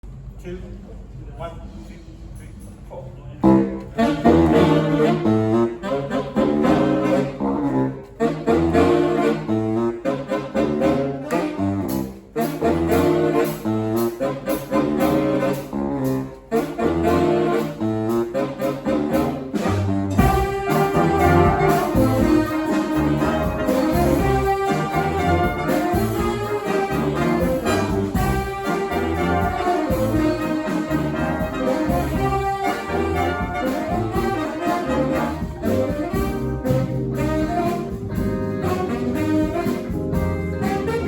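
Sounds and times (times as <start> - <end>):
low bass line: 3.4 - 9.9, 19.1 - 41.0
brass band playing jazzy blues: 3.4 - 41.0.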